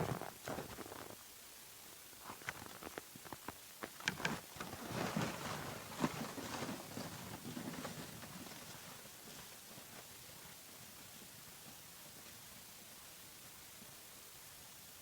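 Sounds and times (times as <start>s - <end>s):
rustling: 2.2s - 10.5s.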